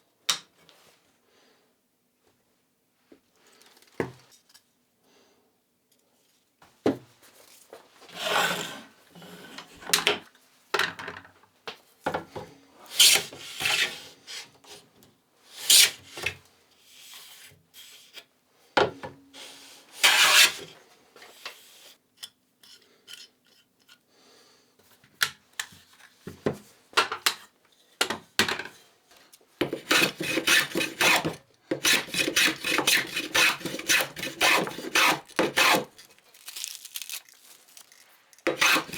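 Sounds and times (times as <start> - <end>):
rasp scraping wood: 29.6 - 36.1, 38.4 - 38.9.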